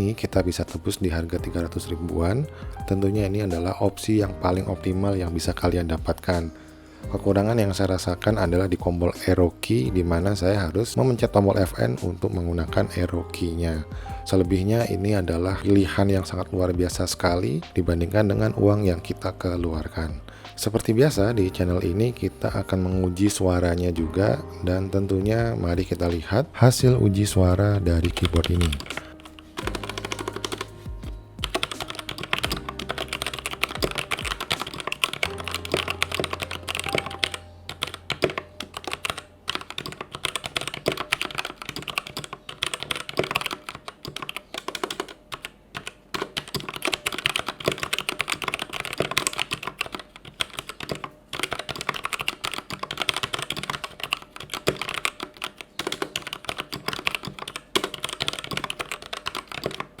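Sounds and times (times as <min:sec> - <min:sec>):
mechanical keyboard typing: 0:00.1 - 0:06.6, 0:27.7 - 1:00.0.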